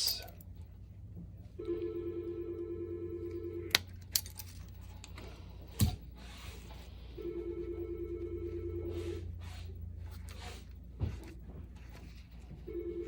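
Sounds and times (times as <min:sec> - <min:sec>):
telephone ringing: 0:01.6 - 0:03.8, 0:07.2 - 0:09.3, 0:12.6 - 0:13.0.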